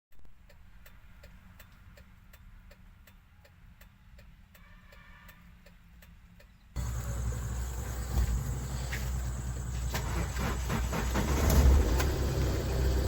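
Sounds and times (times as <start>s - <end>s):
faint mechanical ticking: 0.1s - 10.0s
low steady hum: 6.1s - 13.0s.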